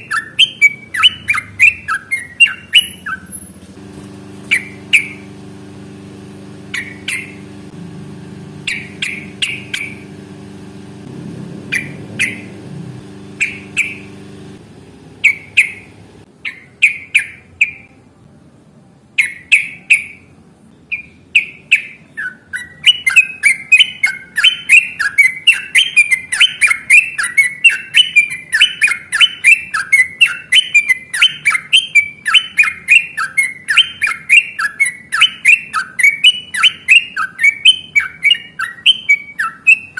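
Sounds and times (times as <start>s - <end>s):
bird chirping: 0.0s - 3.6s, 4.4s - 5.3s, 6.6s - 7.5s, 8.5s - 10.3s, 11.6s - 14.4s, 15.2s - 18.1s, 19.2s - 39.9s
faint steady hum: 0.0s - 16.8s.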